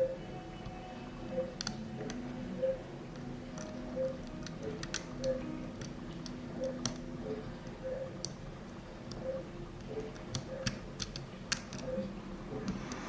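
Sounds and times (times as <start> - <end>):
lock pick metal clicks: 1.6 - 2.2, 3.6 - 7.0, 9.8 - 12.0.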